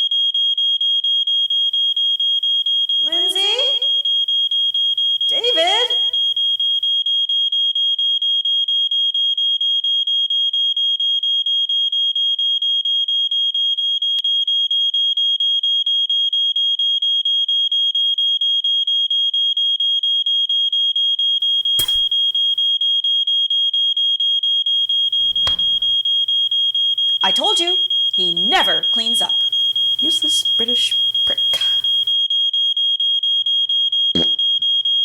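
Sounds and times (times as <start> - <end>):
electronic alarm beeping: 1.0 - 6.9, 21.4 - 22.8, 24.7 - 35.0
short thump: 25.2 - 26.0.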